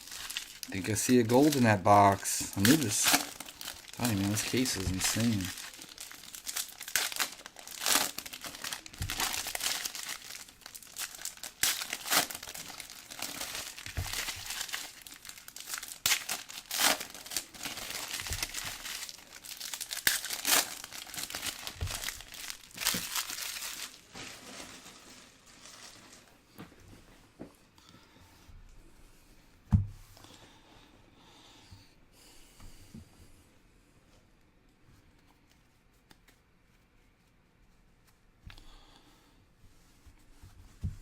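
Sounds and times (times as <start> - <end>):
foil wrappers crinkling and tearing: 0.0 - 26.5.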